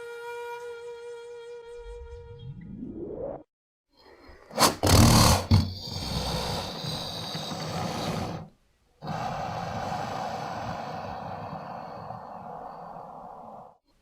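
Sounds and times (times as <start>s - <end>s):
alligator hissing breath: 4.5s - 13.8s.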